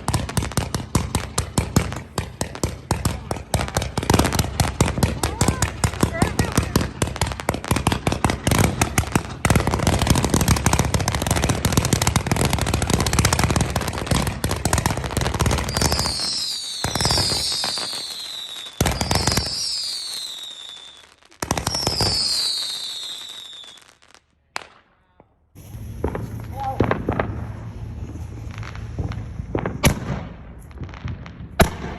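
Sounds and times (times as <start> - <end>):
fireworks booms: 0.0 - 31.9
rapid fireworks bangs and crackling: 0.0 - 31.9
falling firework whistles: 7.8 - 24.2, 25.6 - 31.0.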